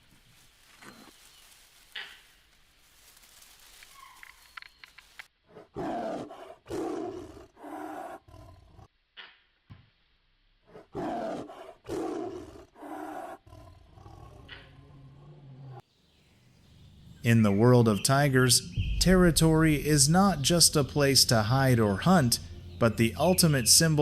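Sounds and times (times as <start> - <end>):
tiger roaring: 5.5 - 8.9, 10.7 - 15.8.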